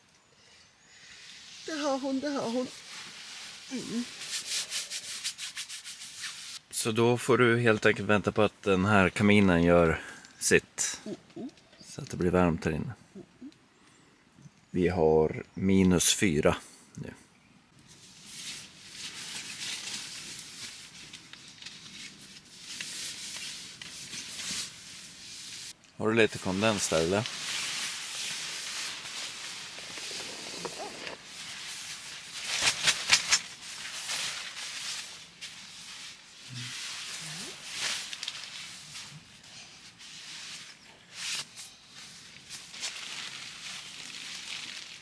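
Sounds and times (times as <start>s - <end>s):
rustling and scraping: 1.4s - 6.6s, 17.8s - 25.8s, 26.4s - 45.0s
dog whining: 11.0s - 11.8s, 30.5s - 31.2s.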